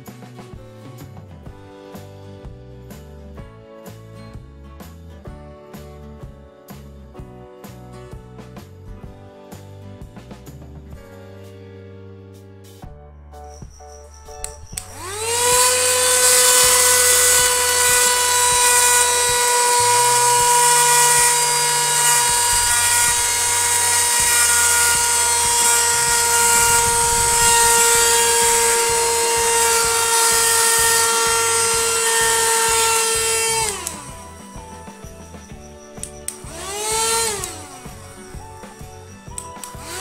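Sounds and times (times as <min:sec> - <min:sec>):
portable vacuum cleaner motor whine: 0:14.2 - 0:40.0.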